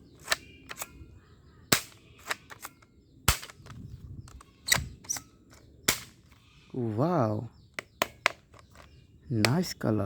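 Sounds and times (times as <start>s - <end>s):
faint toy gun clicks: 0.2s - 1.0s, 1.7s - 6.4s
toy gun sharp snaps: 1.7s - 3.7s.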